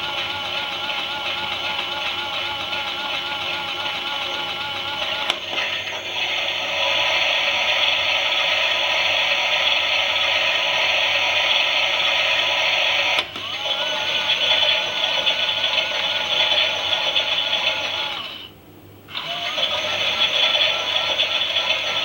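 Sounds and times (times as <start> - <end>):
toy machine click: 13.2 - 13.5.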